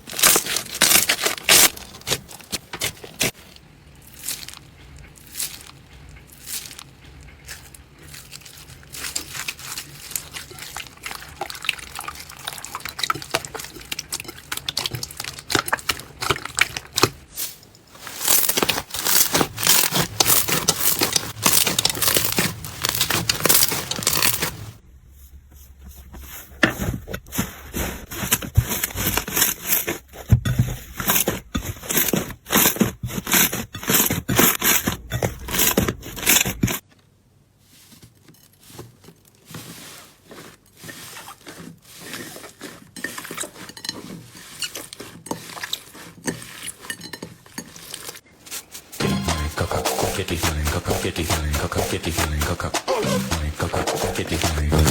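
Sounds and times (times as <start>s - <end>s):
slime crackling and crunching: 0.0s - 24.8s.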